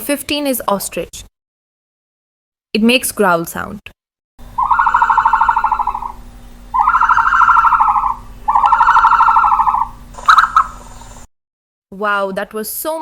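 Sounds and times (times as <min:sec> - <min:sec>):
ostrich growling calls: 0:04.4 - 0:11.2.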